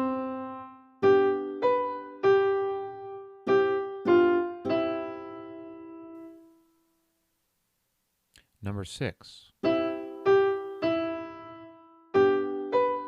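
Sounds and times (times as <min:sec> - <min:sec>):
piano melody: 0:00.0 - 0:06.6, 0:09.6 - 0:13.0.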